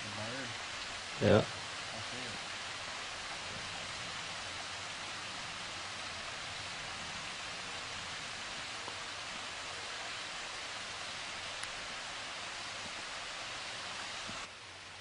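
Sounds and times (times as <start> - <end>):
waterfall rushing hiss: 0.0 - 15.0
faint ticks: 11.5 - 11.8.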